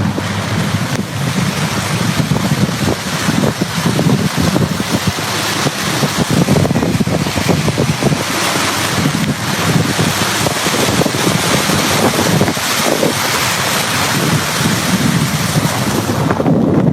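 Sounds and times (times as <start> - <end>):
rushing flood water: 0.0 - 16.9
wind buffeting microphone: 0.0 - 16.9.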